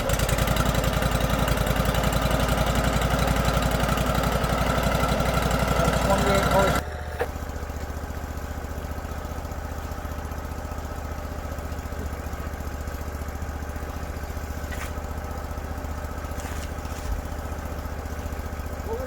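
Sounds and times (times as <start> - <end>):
small engine idling: 0.0 - 19.0.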